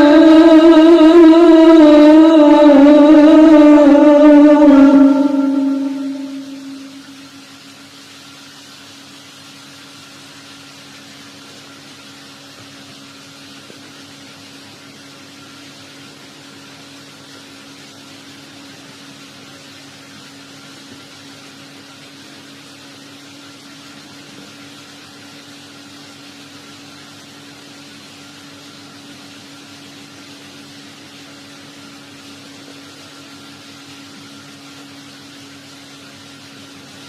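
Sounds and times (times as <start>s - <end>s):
constant low tone: 0.0s - 7.8s
background hum and hiss: 0.0s - 37.0s.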